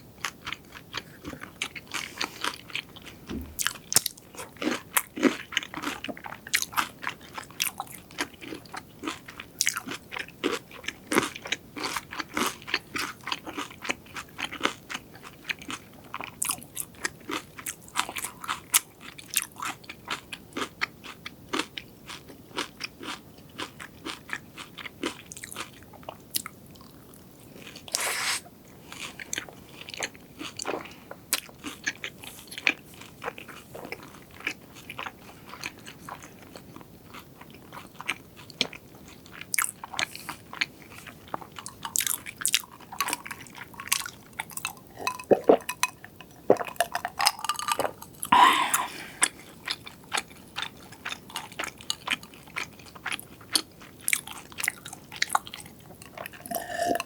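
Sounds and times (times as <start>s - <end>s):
crunching and chewing fried food: 0.0s - 57.0s.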